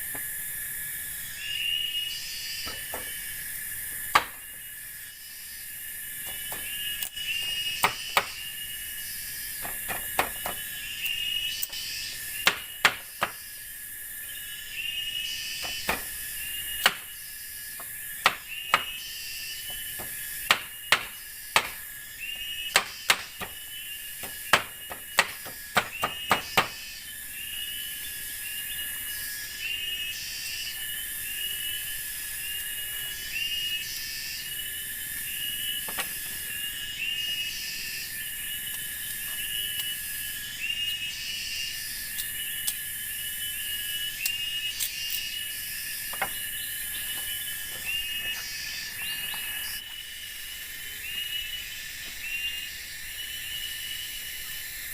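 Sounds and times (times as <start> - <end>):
insects calling: 0.0 - 54.9
sharp knocks: 9.6 - 10.6, 15.6 - 16.1
repeated chirping call: 25.0 - 26.8.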